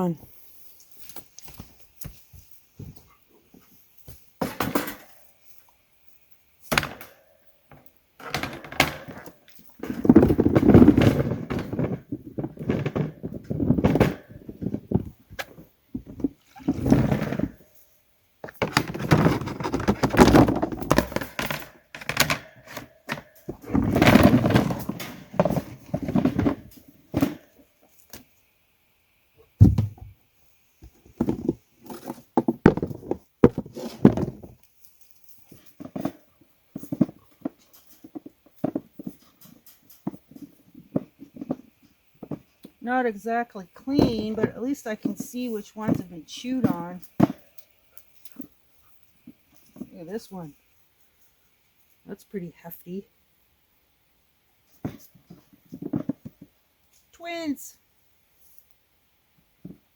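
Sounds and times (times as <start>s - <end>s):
carrots knocking against bin: 18.4s - 27.5s, 30.8s - 34.6s.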